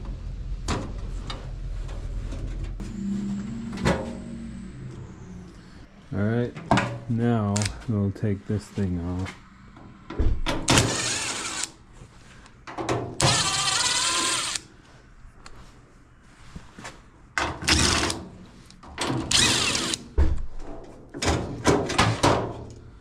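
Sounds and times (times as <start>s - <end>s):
power drill running: 10.7s - 11.8s, 13.2s - 14.7s, 19.2s - 20.0s.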